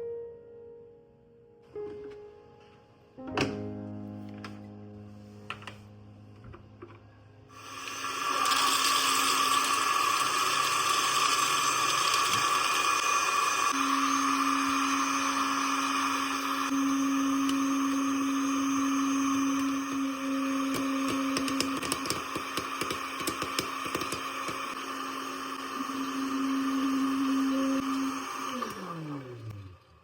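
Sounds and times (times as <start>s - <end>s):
small electric motor spinning: 7.6s - 29.6s.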